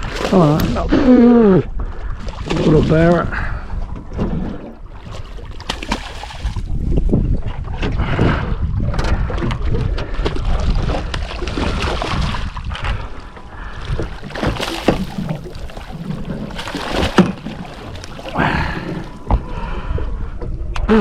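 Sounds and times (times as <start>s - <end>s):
water sloshing: 0.0s - 1.0s, 1.7s - 8.0s, 8.9s - 20.7s
knocks on boat: 14.0s - 17.9s, 19.2s - 19.5s.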